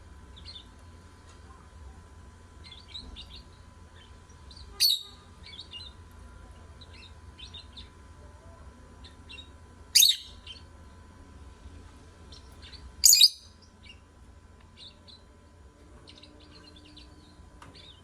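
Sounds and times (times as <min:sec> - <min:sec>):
low steady hum: 0:00.0 - 0:18.0
birds chirping: 0:00.2 - 0:01.0, 0:02.6 - 0:08.1, 0:08.9 - 0:11.1, 0:12.2 - 0:18.0
loud sharp bird calls: 0:04.0 - 0:06.0, 0:09.3 - 0:10.7, 0:12.3 - 0:14.0.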